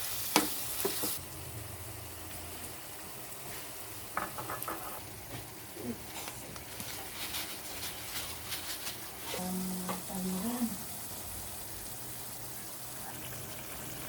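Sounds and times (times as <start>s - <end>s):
food sizzling in a pan: 0.0s - 14.0s
stirring in a pan: 3.4s - 14.0s.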